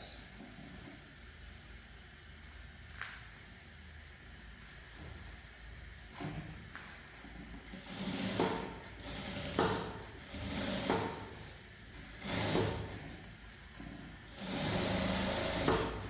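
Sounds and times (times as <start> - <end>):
sewing machine running: 7.6 - 13.2, 14.2 - 16.0.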